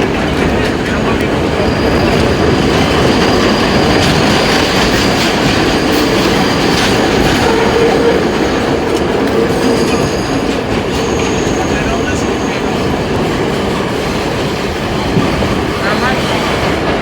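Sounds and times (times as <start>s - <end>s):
steel wheels clattering on rails: 0.0s - 17.0s.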